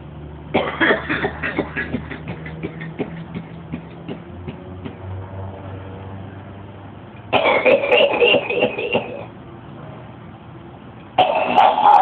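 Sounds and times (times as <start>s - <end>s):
man coughing: 0.6s - 4.6s, 7.3s - 9.3s, 11.2s - 12.0s.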